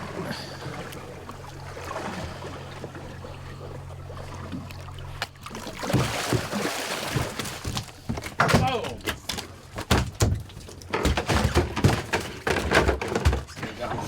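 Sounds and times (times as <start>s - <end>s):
boat motor idling: 0.0s - 11.0s.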